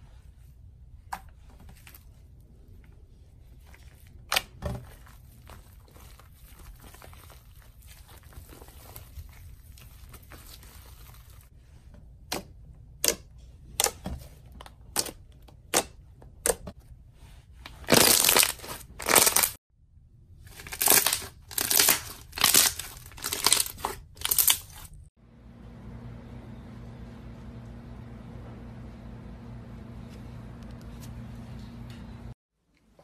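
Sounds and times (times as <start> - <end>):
crunchy slime crackling: 4.8 - 11.5, 17.9 - 19.6, 20.5 - 25.1.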